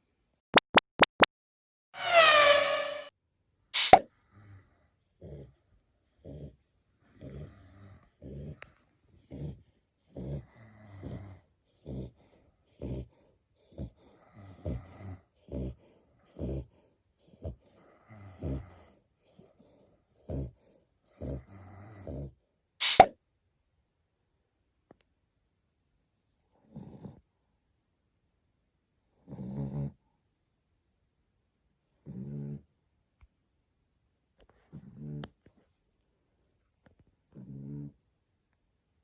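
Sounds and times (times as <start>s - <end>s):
loud sudden snort: 3.8s - 4.0s, 22.8s - 23.1s
puppy snoring: 4.6s - 23.0s, 26.6s - 27.3s, 29.1s - 30.0s, 32.0s - 32.7s, 34.7s - 35.4s, 37.3s - 38.0s.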